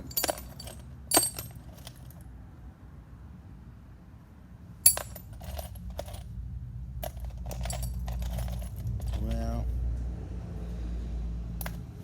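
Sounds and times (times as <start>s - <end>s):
nuts and bolts clinking: 0.0s - 2.3s, 4.8s - 6.4s, 7.0s - 9.7s, 11.6s - 12.0s.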